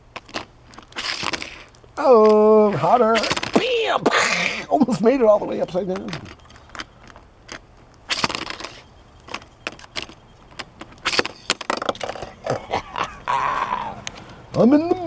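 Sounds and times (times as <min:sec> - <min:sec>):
toy car clicks and knocks: 0:00.0 - 0:04.2, 0:05.5 - 0:13.2
toy car clattering rattles: 0:00.0 - 0:13.2.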